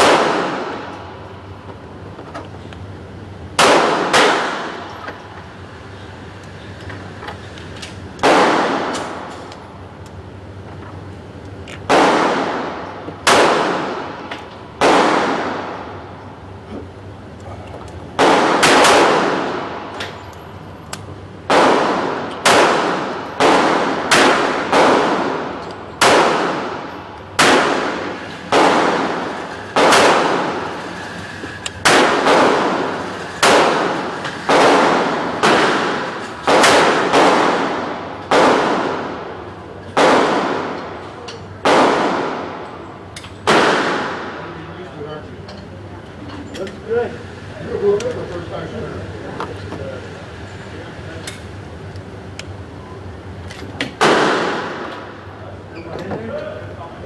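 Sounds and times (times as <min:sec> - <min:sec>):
handgun shots echoing: 0:03.6 - 0:04.9, 0:11.9 - 0:14.1, 0:14.8 - 0:15.8, 0:18.2 - 0:19.8, 0:21.5 - 0:30.7, 0:31.9 - 0:39.2, 0:40.0 - 0:40.9, 0:41.6 - 0:44.4, 0:54.0 - 0:55.1.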